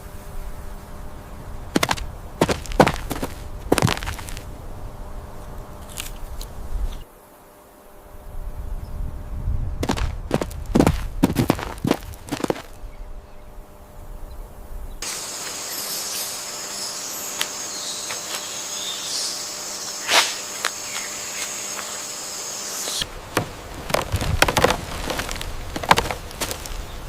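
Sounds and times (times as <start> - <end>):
insects chirring: 0.0 - 27.0
footsteps: 1.8 - 4.5, 9.8 - 12.8, 23.0 - 27.0
rustling: 1.8 - 4.5, 23.0 - 27.0.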